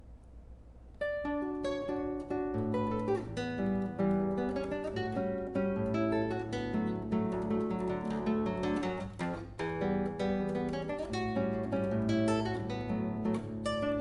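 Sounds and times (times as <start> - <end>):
acoustic guitar playing: 1.0 - 14.0.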